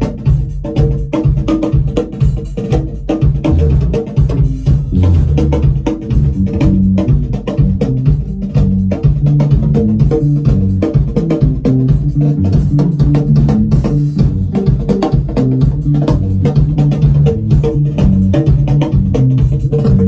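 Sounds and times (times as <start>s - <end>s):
drum kit beat: 0.0s - 20.0s
bass guitar notes: 3.5s - 10.8s, 11.4s - 20.0s.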